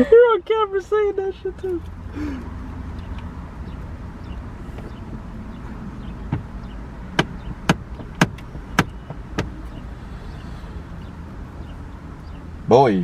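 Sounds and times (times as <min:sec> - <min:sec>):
sharp knocks: 0:06.2 - 0:09.8.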